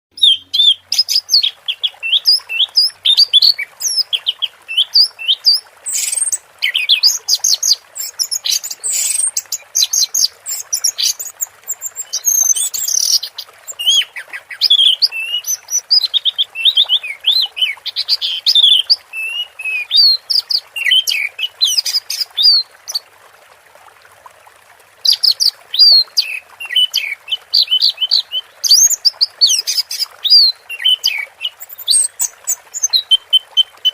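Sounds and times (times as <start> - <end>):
running water hiss: 0.2 - 33.9.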